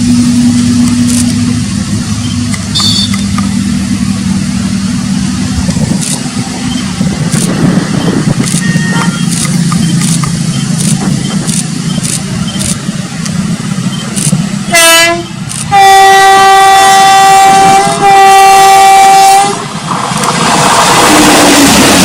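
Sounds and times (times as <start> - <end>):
train rumbling and clicking: 0.0 - 22.0
train horn blasts: 2.7 - 3.4, 8.6 - 9.3, 14.7 - 19.7.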